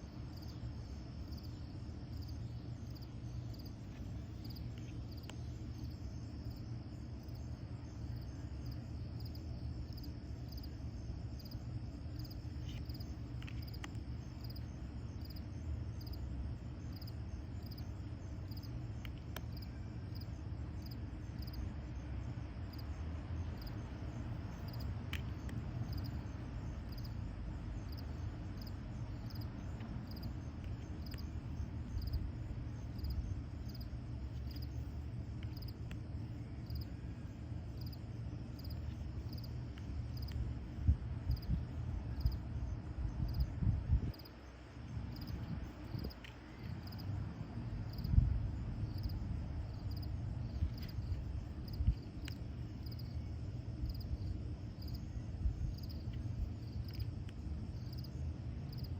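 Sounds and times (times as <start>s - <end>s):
low background rumble: 0.0s - 58.9s.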